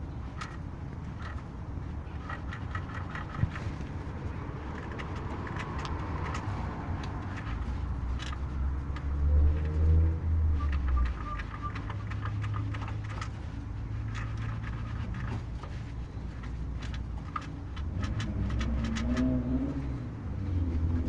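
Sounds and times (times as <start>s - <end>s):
car engine humming: 16.4s - 21.0s.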